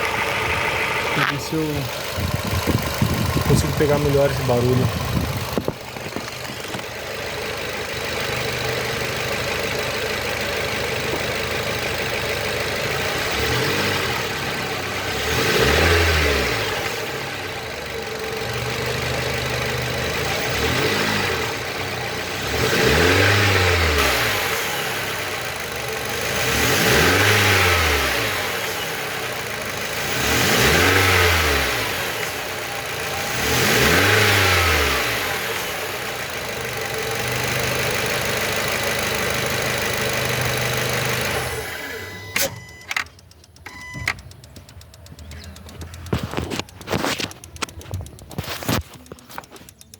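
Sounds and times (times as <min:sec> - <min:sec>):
car engine idling and revving: 0:00.0 - 0:49.9.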